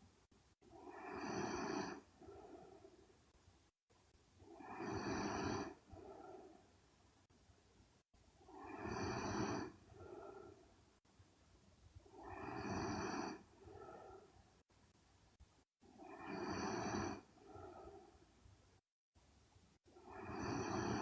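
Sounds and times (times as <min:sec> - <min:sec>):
soft breath: 0:00.6 - 0:03.4, 0:04.4 - 0:07.0, 0:08.4 - 0:11.1, 0:12.0 - 0:14.7, 0:15.8 - 0:18.8, 0:19.8 - 0:21.0
woman snoring: 0:00.7 - 0:02.9, 0:04.5 - 0:06.5, 0:08.4 - 0:10.7, 0:12.1 - 0:14.3, 0:16.0 - 0:18.1, 0:20.0 - 0:21.0.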